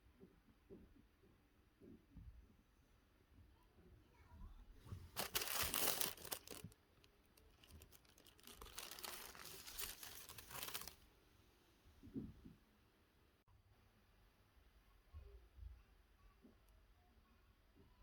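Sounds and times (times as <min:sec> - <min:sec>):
crinkly packaging crackling: 0:04.9 - 0:11.0.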